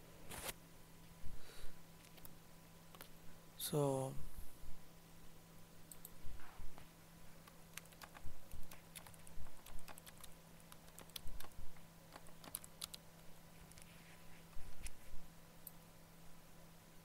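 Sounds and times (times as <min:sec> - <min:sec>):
low electrical hum: 0:00.0 - 0:17.0
typing on computer keyboard: 0:07.4 - 0:13.0.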